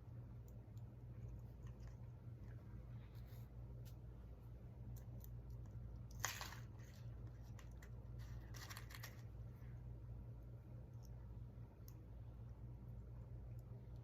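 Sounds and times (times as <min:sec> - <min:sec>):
rustling and crinkling materials: 0:05.0 - 0:09.6.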